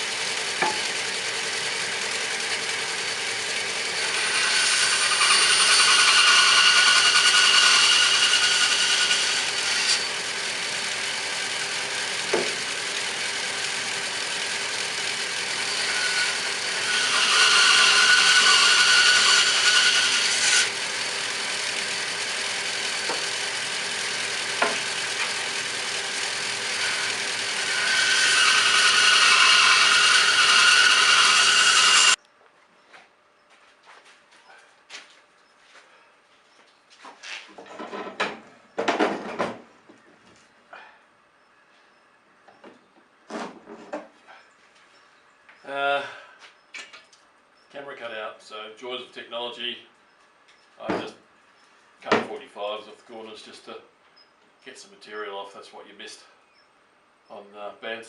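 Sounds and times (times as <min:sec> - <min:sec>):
power saw cutting wood: 0:00.0 - 0:32.2.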